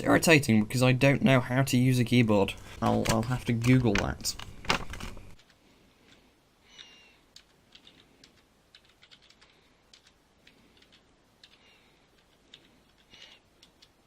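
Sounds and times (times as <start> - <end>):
typing on computer keyboard: 6.8 - 14.0.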